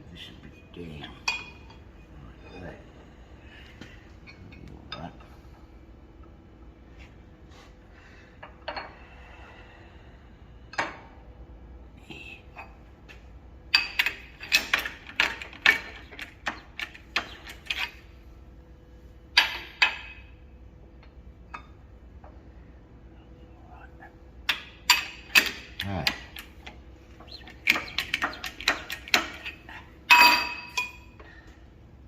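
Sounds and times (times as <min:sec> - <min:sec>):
steel tools clanking: 0:24.5 - 0:31.2.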